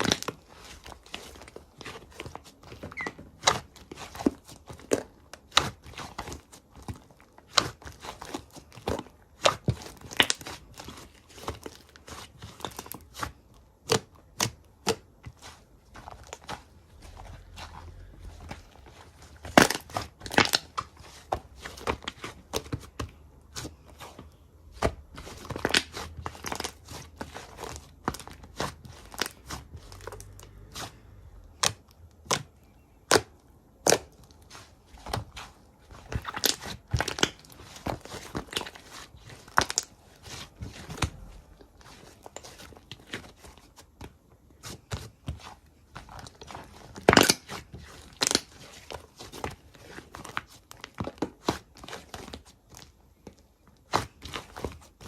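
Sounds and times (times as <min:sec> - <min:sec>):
slime popping and crackling: 0:35.1 - 0:41.5, 0:46.1 - 0:48.6.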